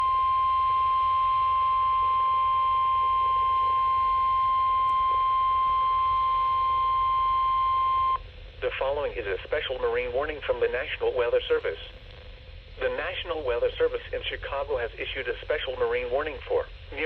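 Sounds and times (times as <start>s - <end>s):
high steady alarm beep: 0.0s - 8.2s
low background hum: 0.0s - 17.0s.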